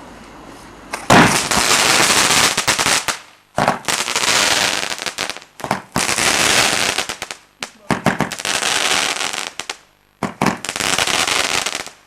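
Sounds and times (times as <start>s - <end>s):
fireworks hissing and crackling: 0.0s - 12.0s
firework bang: 0.9s - 4.6s, 5.6s - 7.0s, 7.7s - 8.4s, 9.6s - 12.0s
sharp firework cracks: 0.9s - 12.0s.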